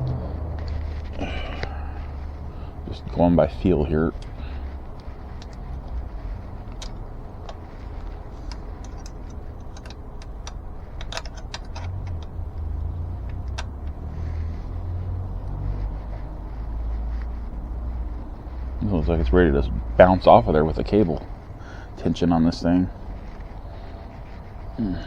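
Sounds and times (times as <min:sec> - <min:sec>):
metallic brake caliper clicks: 0:04.1 - 0:14.5.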